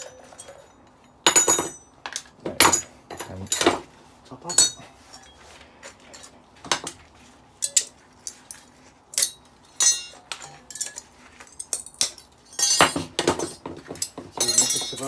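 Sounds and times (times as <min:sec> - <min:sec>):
small metal parts clinking: 0:07.6 - 0:15.0.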